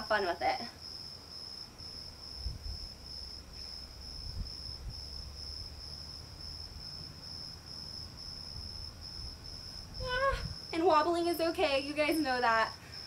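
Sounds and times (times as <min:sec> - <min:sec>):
insect chirring trill: 0:00.0 - 0:13.0
wind rumble on microphone: 0:02.2 - 0:03.1, 0:03.9 - 0:05.8, 0:08.4 - 0:10.7.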